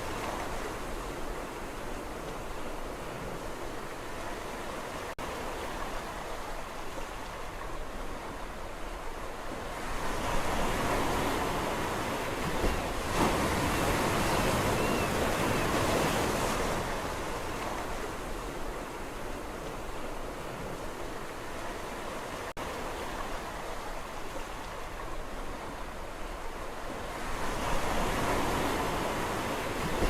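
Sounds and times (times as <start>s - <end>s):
sea waves on a shore: 0.0s - 30.0s.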